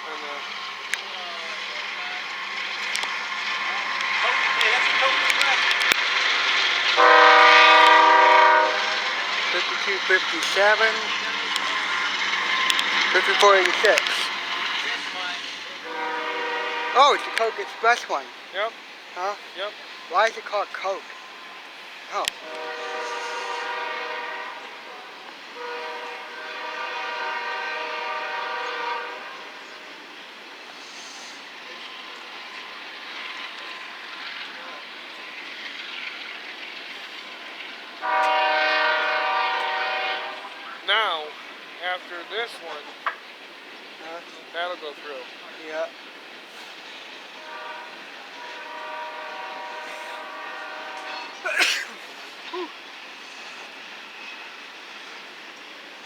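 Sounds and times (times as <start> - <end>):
passing train rumble: 0.0 - 56.0
locomotive air horn: 7.0 - 14.4, 15.8 - 18.2, 22.3 - 29.6, 38.0 - 40.7, 47.4 - 51.8.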